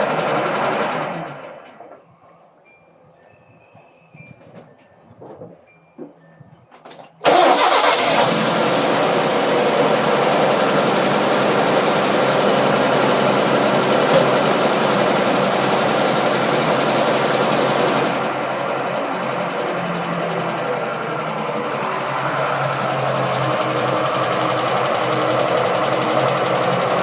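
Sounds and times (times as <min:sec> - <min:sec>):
pickup engine starting and idling: 0:07.2 - 0:27.0.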